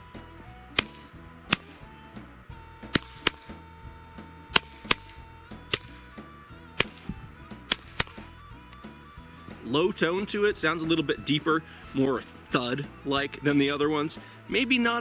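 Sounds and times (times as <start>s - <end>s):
suppressed pistol shots: 0.7s - 2.0s, 2.9s - 3.8s, 4.5s - 6.2s, 6.8s - 8.4s.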